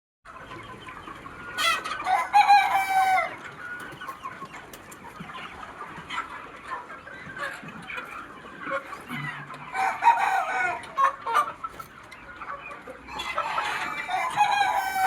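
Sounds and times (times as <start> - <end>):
chickens clucking: 0.3 - 15.0
rooster crowing: 9.6 - 10.8.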